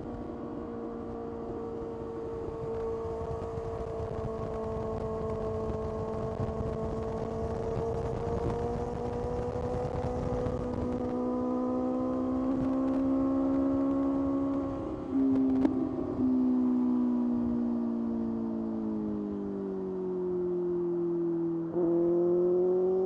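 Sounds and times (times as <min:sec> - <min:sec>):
motorcycle engine revving: 0:01.0 - 0:16.2, 0:21.7 - 0:23.0.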